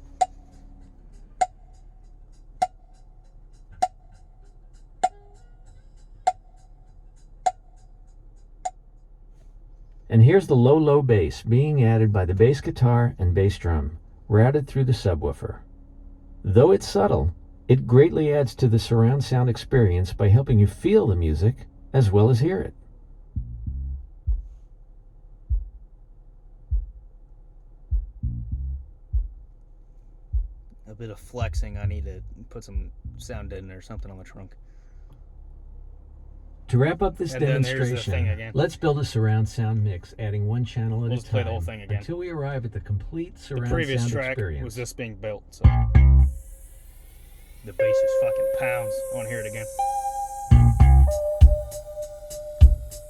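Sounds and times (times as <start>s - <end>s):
bass guitar phrases: 10.0s - 24.6s, 27.9s - 29.4s, 30.3s - 53.0s
bass drum thumping: 23.3s - 24.6s, 25.4s - 26.0s, 26.6s - 27.2s, 27.9s - 29.6s, 30.3s - 30.8s, 31.4s - 34.3s, 45.6s - 46.5s, 50.4s - 53.0s
hand percussion strikes: 47.9s - 53.0s.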